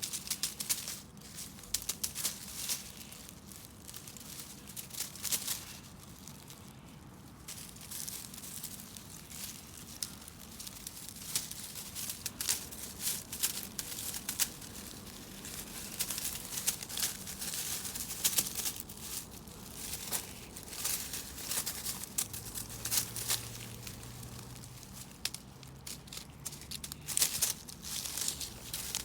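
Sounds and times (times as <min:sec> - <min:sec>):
light crackles: 0:00.0 - 0:29.0
rustling and crinkling: 0:00.0 - 0:29.0.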